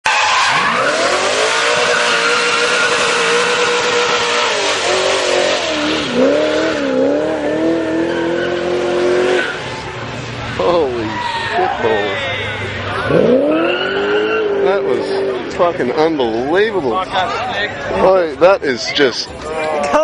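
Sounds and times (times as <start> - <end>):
car engine revving hard: 0.1 - 10.0, 13.0 - 15.6
spinning tyres hissing: 0.1 - 11.6.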